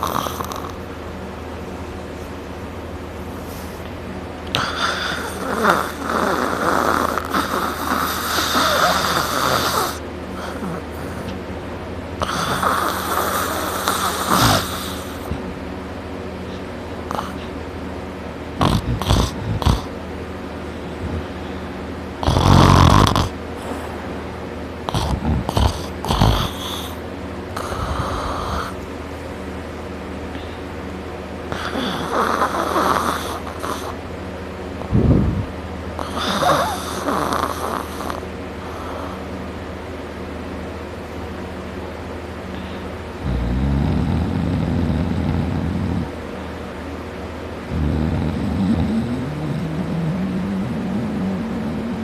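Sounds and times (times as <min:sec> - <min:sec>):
person snoring loudly: 0:00.0 - 0:00.8, 0:04.5 - 0:11.3, 0:12.2 - 0:15.3, 0:17.1 - 0:17.5, 0:18.6 - 0:19.9, 0:22.2 - 0:23.8, 0:24.9 - 0:27.0, 0:27.6 - 0:28.8, 0:31.5 - 0:34.0, 0:34.9 - 0:39.2, 0:43.2 - 0:46.2, 0:47.7 - 0:52.0
steady low hum: 0:00.0 - 0:52.0
quiet breathing: 0:42.5 - 0:43.0.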